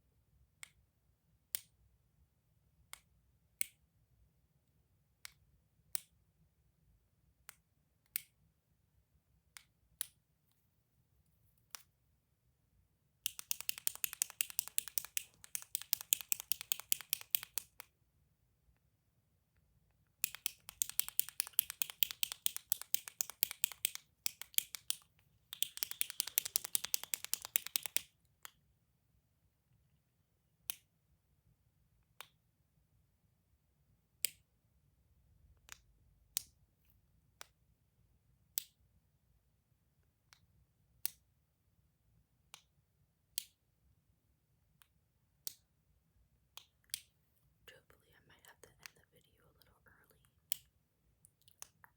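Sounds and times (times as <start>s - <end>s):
clicky toy clicking: 13.3s - 17.9s, 20.2s - 28.6s.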